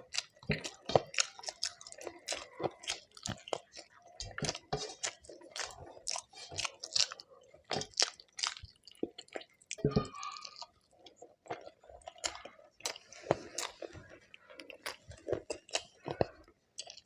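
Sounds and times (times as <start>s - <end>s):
person chewing food: 0.0s - 17.0s.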